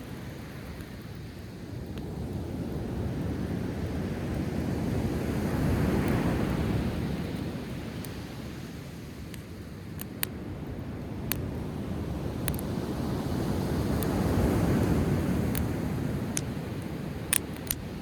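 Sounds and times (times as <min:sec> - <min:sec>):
bonfire crackling and popping: 0:06.0 - 0:18.0.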